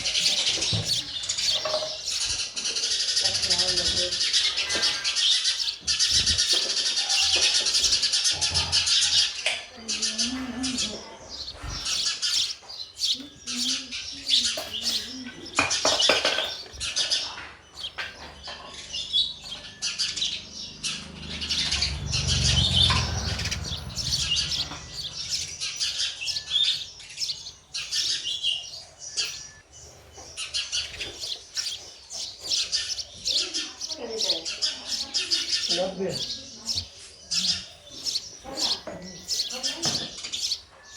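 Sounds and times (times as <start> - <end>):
chicks calling: 0.0 - 40.9
sparrows chirping: 0.0 - 40.9
low rumble: 21.1 - 26.3.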